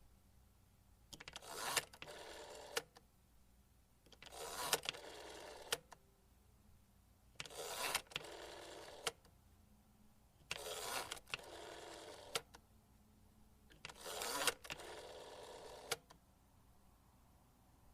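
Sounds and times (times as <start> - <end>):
rotary telephone dial turning: 1.2 - 2.9, 4.1 - 5.8, 7.4 - 9.2, 10.5 - 12.6, 13.7 - 16.1.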